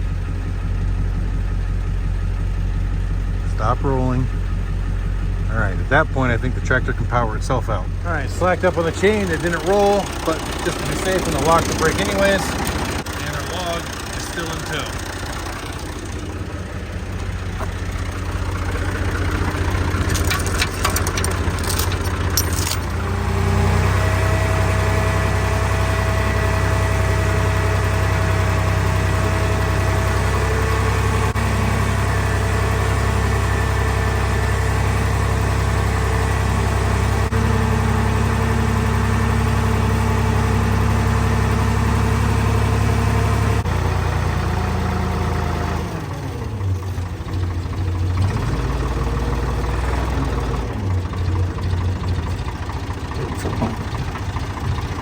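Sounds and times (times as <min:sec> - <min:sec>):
tractor engine running: 0:00.0 - 0:55.0
sharp clicks or rattles: 0:19.5 - 0:23.0.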